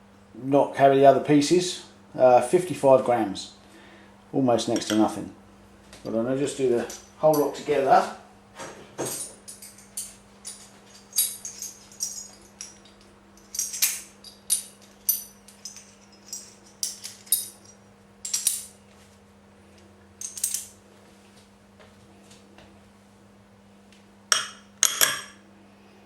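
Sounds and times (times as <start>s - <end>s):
metal spanners clinking: 6.0s - 7.7s, 9.0s - 18.8s, 20.2s - 20.8s.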